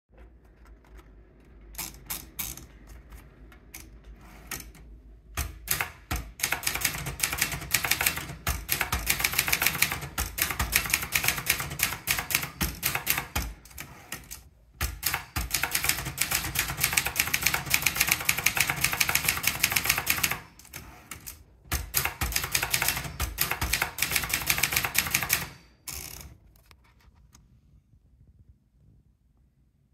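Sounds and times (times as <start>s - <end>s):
typewriter keys clacking: 5.4s - 26.3s.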